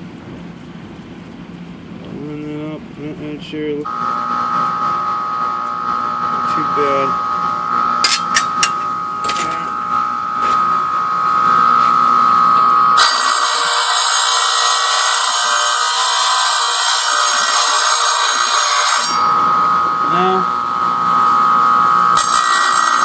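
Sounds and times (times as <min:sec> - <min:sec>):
glass grinder whine: 0:03.9 - 0:23.0
harsh glass grinding: 0:08.0 - 0:09.8.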